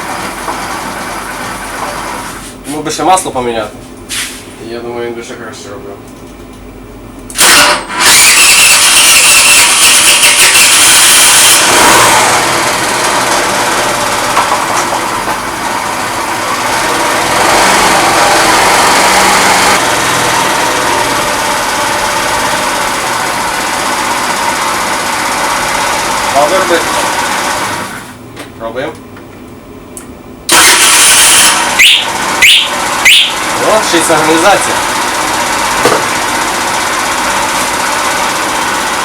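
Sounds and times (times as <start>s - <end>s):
scooter engine starting and running: 0.0s - 2.4s, 7.3s - 28.2s, 30.5s - 39.0s.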